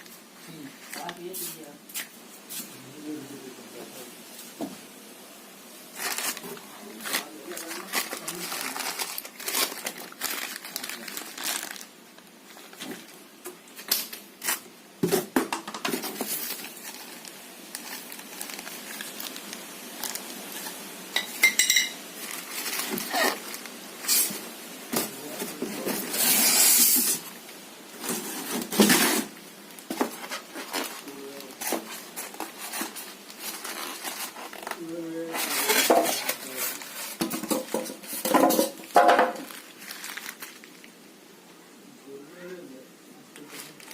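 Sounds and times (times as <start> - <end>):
rustling scrape: 5.9 - 11.9, 15.9 - 21.6, 22.2 - 40.8.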